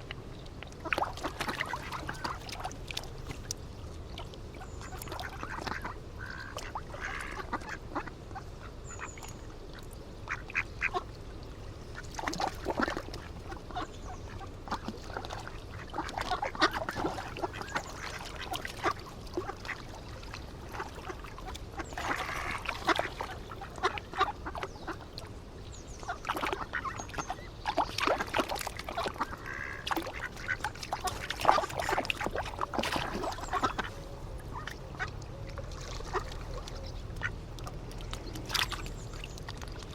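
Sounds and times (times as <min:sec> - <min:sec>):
ducks quacking: 0:04.6 - 0:09.2, 0:12.3 - 0:19.9, 0:20.7 - 0:25.2, 0:26.0 - 0:35.2, 0:35.8 - 0:37.8.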